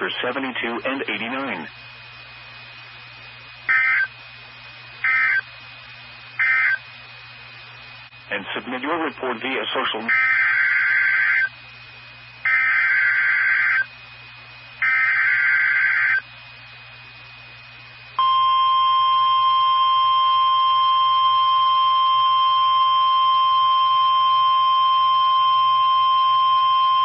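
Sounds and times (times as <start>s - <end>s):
warbling digital data bursts: 3.7s - 4.1s, 6.4s - 6.8s, 9.8s - 11.5s, 12.5s - 13.9s, 14.8s - 16.2s
steady warning alarm tone: 3.7s - 4.2s, 5.0s - 5.5s, 6.4s - 6.9s, 9.9s - 11.6s, 12.4s - 14.0s, 14.8s - 16.3s, 18.2s - 27.0s.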